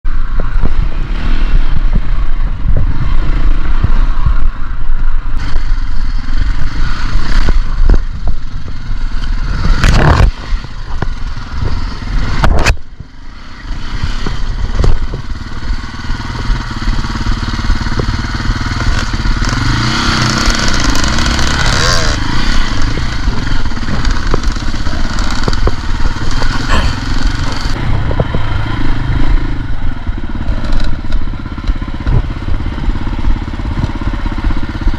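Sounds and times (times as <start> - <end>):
dirt bike engine revving: 13.2 - 34.9.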